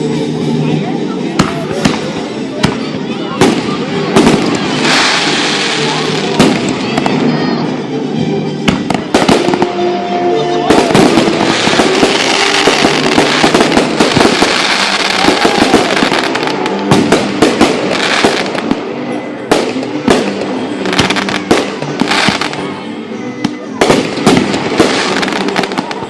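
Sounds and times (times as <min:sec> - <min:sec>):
fireworks bangs and crackling: 0:00.0 - 0:07.8, 0:08.6 - 0:22.8, 0:23.4 - 0:26.0
fireworks booms: 0:01.4 - 0:07.2, 0:10.7 - 0:18.8.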